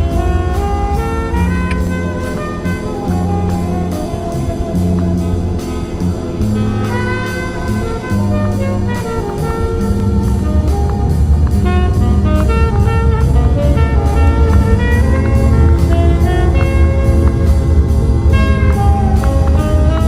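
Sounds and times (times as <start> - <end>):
upbeat jazz with brass: 0.0 - 20.0.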